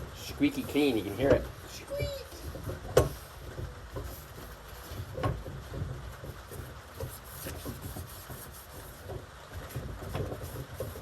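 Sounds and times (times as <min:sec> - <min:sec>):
rag rubbing on metal: 0:00.0 - 0:11.0
knocks from handling a tool: 0:02.5 - 0:08.1.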